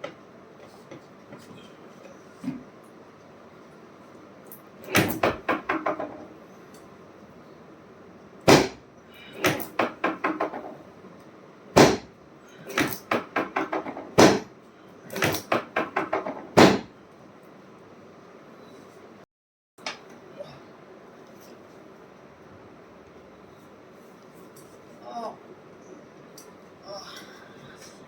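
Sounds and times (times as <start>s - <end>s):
chiropractic adjustment knocks: 8.5s - 8.8s, 11.8s - 12.1s, 15.2s - 16.9s.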